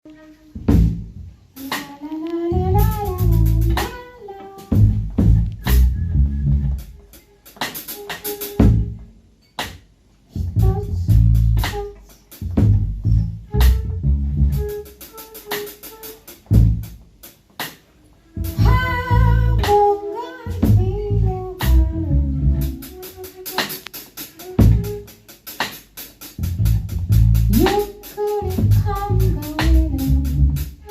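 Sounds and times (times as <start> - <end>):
low bass notes: 0.6 - 1.2, 2.5 - 4.0, 4.7 - 7.1, 8.6 - 9.1, 10.4 - 14.9, 16.4 - 17.0, 18.4 - 19.8, 20.4 - 23.1, 24.6 - 25.0, 26.4 - 30.9
drum kit hits: 0.6 - 1.9.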